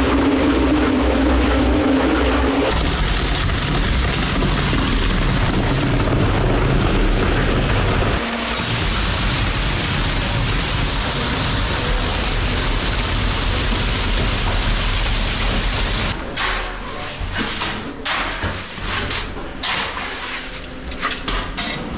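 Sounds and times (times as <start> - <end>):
concrete churning rush: 0.0 - 16.2.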